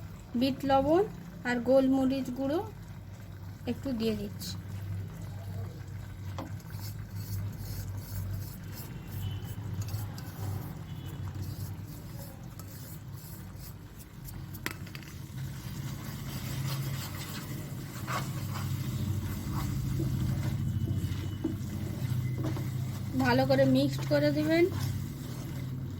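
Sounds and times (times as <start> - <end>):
spoon scraping sticky mixture in pan: 6.4 - 15.0, 15.7 - 25.8.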